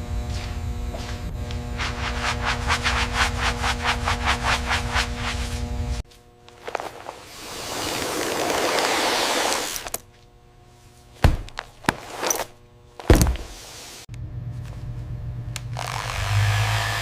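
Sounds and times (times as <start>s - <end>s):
low steady machine hum: 0.0s - 7.4s, 9.9s - 16.2s
heavy mechanical thunks: 11.2s - 11.6s, 13.0s - 13.5s.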